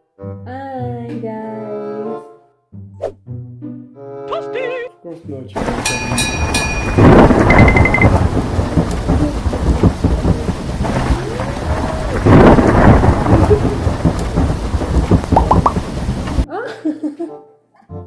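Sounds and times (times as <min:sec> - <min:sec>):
rushing rumbling noise with crackle: 0:05.6 - 0:16.5
short high beeps: 0:05.9 - 0:08.2.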